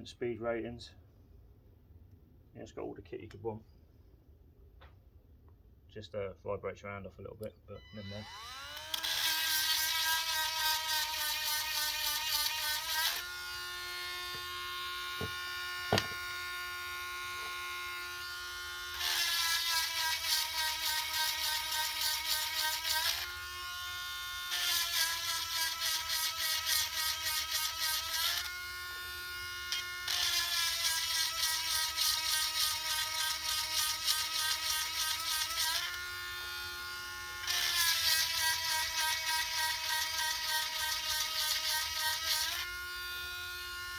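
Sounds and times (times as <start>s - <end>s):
rotary tool high-pitched whine: 7.8s - 43.9s
stone grinding chain teeth: 8.8s - 13.2s, 37.5s - 42.6s
light knocks: 15.2s - 16.2s.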